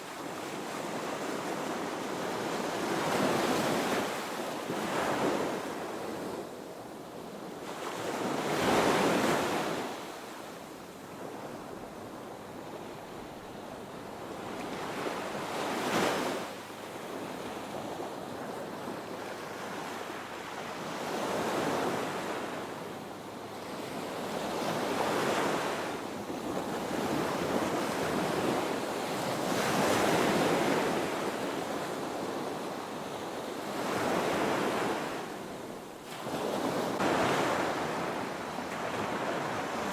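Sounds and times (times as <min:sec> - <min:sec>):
ocean surf breaking on beach: 0:23.6 - 0:39.9.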